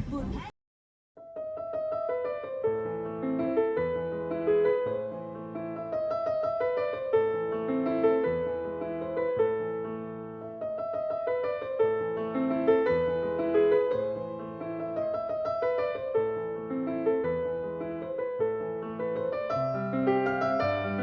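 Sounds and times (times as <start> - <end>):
gentle piano music: 1.2 - 21.0.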